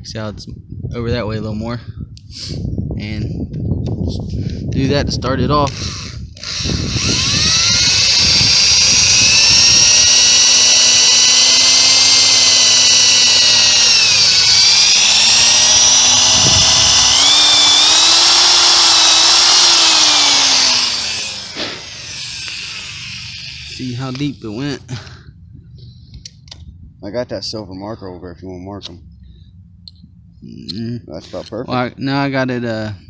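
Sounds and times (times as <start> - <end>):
power drill whining: 5.6 - 24.3.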